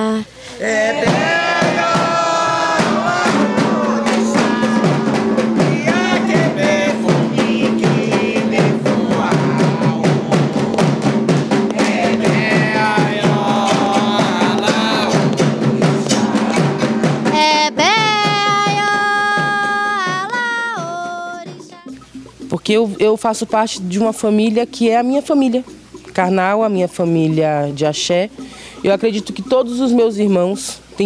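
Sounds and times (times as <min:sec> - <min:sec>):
chant singing: 0:00.6 - 0:21.9
hand drums in fast rhythm: 0:00.9 - 0:31.0.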